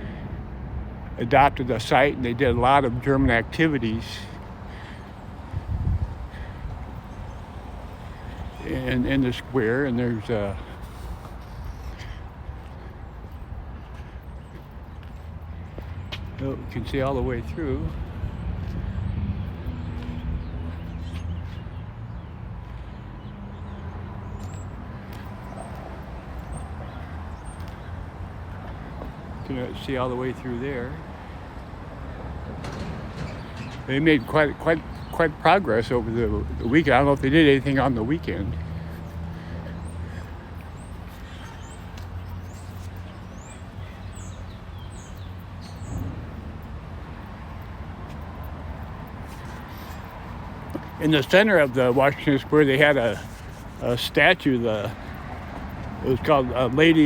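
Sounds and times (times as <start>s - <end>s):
street traffic: 0.0s - 57.0s
vehicle engine humming: 1.6s - 21.6s, 22.6s - 57.0s
small birds chirping: 33.2s - 57.0s.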